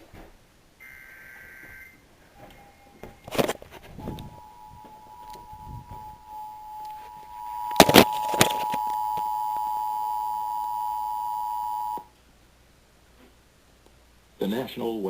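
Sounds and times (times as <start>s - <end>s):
two-tone attention signal: 0.8s - 12.0s.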